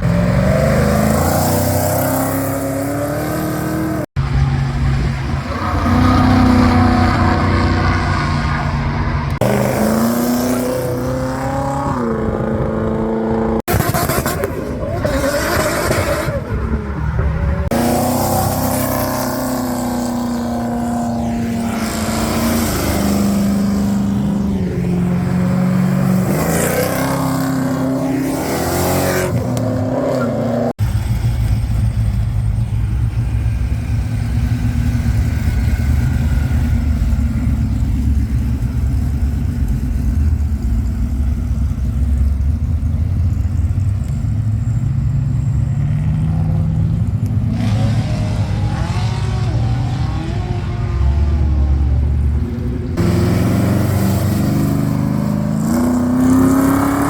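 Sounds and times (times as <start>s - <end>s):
car engine revving: 0.0s - 57.0s
deep engine rumble at low revs: 30.8s - 47.5s.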